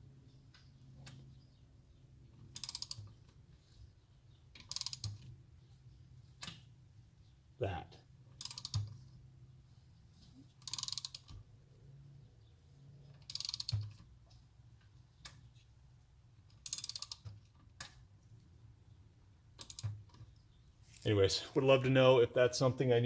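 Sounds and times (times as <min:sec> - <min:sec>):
rapid ratcheting clicks: 0:02.5 - 0:03.1, 0:04.6 - 0:05.3, 0:08.4 - 0:09.0, 0:10.6 - 0:11.4, 0:13.2 - 0:14.0, 0:16.6 - 0:17.3, 0:19.6 - 0:20.2.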